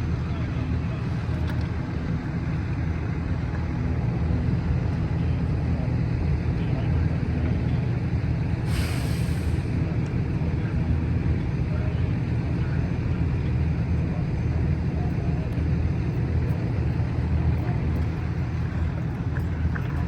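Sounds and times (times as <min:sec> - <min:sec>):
heavy engine idling: 0:00.0 - 0:20.0
air release hiss: 0:08.7 - 0:09.7.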